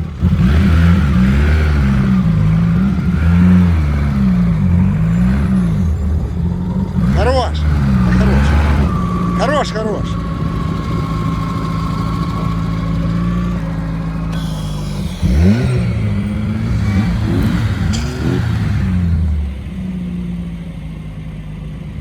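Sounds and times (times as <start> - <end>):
off-road vehicle engine revving: 0.0 - 22.0
steady high whine: 7.2 - 20.2.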